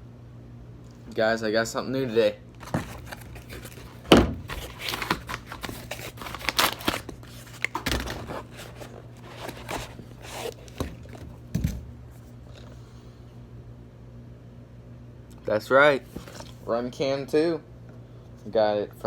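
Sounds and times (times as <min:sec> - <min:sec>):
packaging rustling and tearing: 0:02.6 - 0:12.6.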